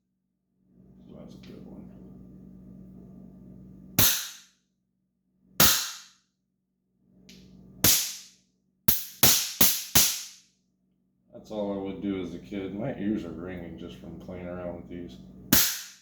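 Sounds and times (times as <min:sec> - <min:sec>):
low hum: 0:00.7 - 0:04.2.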